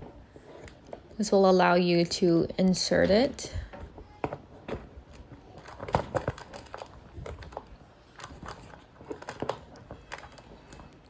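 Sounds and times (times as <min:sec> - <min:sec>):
plastic rubbing: 0:03.0 - 0:11.0.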